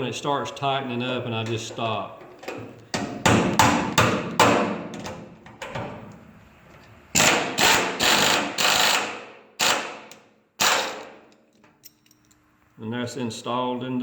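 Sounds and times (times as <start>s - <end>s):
air wrench bursts: 7.1s - 11.3s.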